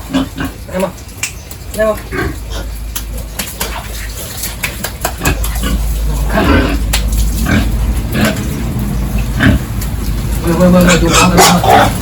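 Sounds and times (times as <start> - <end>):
pigs grunting: 0.0 - 1.1, 2.0 - 12.0
pig calls: 10.6 - 12.0.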